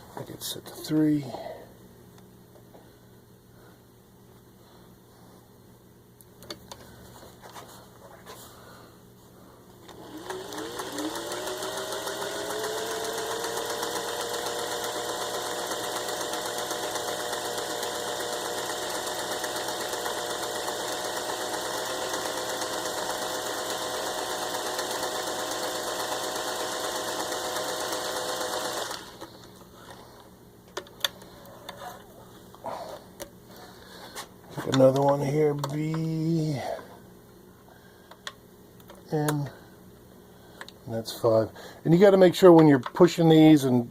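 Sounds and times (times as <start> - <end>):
sewing machine running: 9.8 - 29.4.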